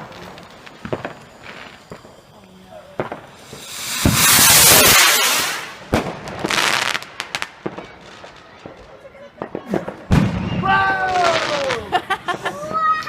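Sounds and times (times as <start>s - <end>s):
firework hiss: 0.0s - 8.2s
firework bang: 2.9s - 7.9s, 9.4s - 11.8s.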